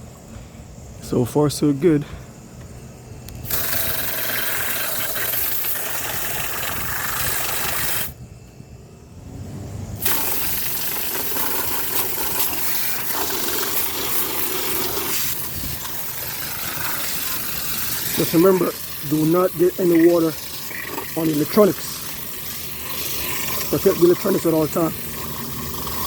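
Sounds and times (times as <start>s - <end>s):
hose water spraying on metal: 3.4s - 8.2s, 10.0s - 26.0s.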